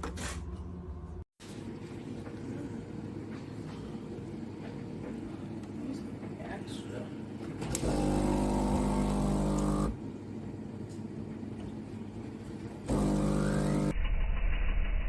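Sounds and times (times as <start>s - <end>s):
espresso machine pump buzzing: 7.7s - 10.0s, 12.8s - 13.9s.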